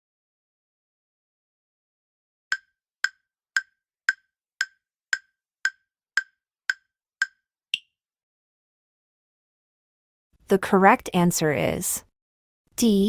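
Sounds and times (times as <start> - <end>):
wood block timer ticks: 2.5 - 7.9.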